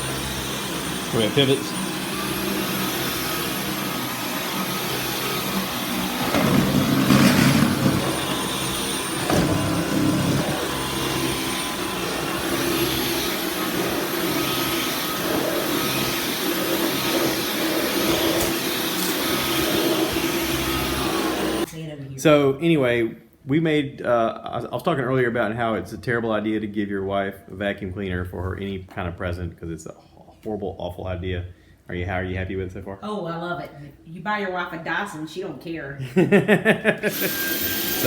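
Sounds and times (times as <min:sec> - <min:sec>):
vacuum cleaner running: 0:00.0 - 0:21.7, 0:37.0 - 0:38.0.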